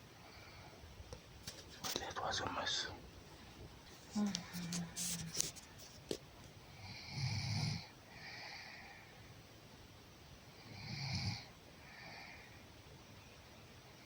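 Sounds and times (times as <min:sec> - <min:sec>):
soft breath: 0:00.0 - 0:01.0, 0:08.1 - 0:09.4, 0:11.8 - 0:12.8.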